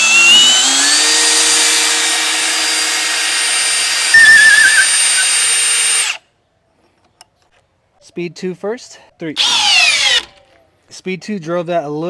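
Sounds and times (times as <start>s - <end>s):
drill motor whine: 0.0s - 6.2s, 9.4s - 10.3s
high squeal: 4.1s - 5.3s.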